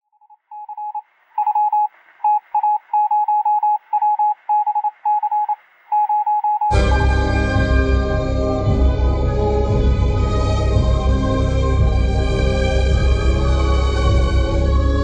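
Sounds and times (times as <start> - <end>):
morse code beeping: 0.2 - 6.8
loud music: 6.7 - 15.0.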